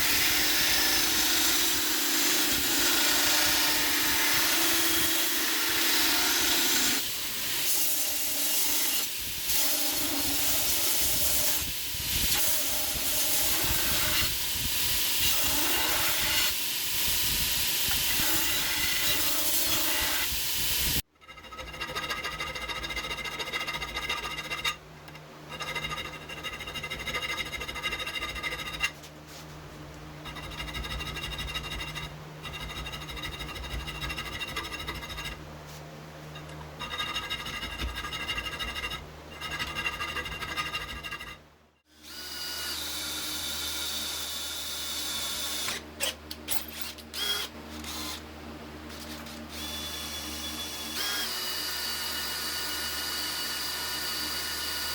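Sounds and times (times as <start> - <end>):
power tool motor whirring: 0.0 - 21.0, 46.5 - 48.2.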